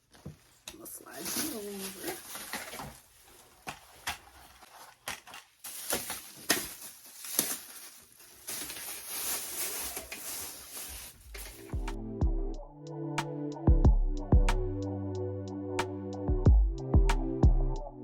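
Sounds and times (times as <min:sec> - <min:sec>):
plastic rustling: 0:00.0 - 0:11.8.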